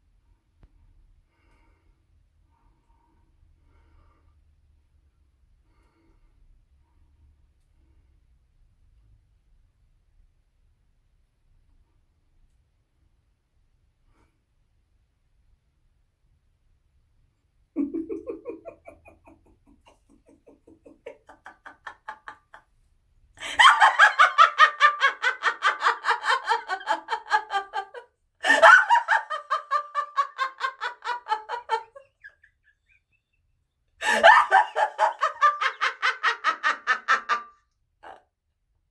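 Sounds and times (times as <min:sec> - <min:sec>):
woman laughing villainously: 0:17.8 - 0:22.7, 0:23.4 - 0:33.0, 0:34.0 - 0:38.2.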